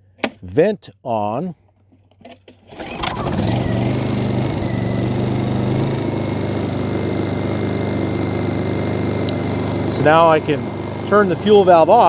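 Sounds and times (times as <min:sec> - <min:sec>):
generator engine running: 0:02.7 - 0:12.0.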